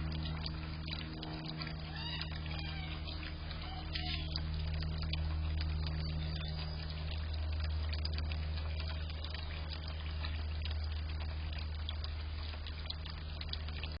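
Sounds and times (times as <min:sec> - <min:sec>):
low hum: 0:00.0 - 0:14.0
small ticks: 0:00.0 - 0:14.0
water trickling in a bird bath: 0:00.0 - 0:14.0.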